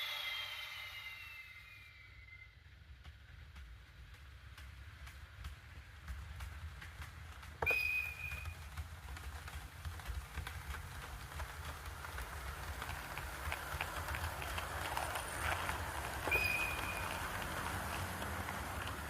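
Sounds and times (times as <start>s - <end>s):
high whistle-like tone: 0.0s - 2.6s, 7.6s - 8.5s, 16.3s - 17.3s
low train rumble: 0.0s - 19.0s
train wheels clicking over rails: 0.0s - 19.0s.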